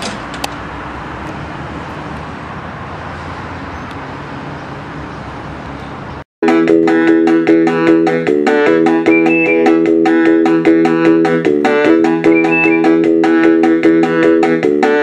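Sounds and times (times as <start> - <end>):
road traffic rumble and hiss: 0.0 - 6.3.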